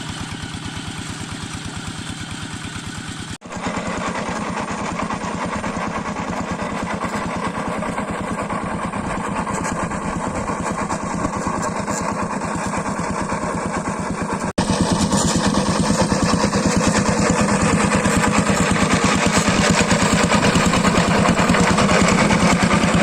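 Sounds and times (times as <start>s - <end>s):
small diesel engine running: 0.0s - 23.0s.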